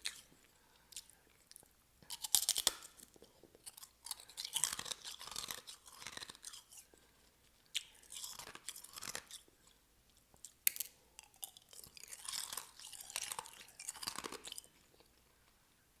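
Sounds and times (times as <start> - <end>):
ice crunching between teeth: 2.1 - 6.9, 7.8 - 9.5, 10.7 - 14.7.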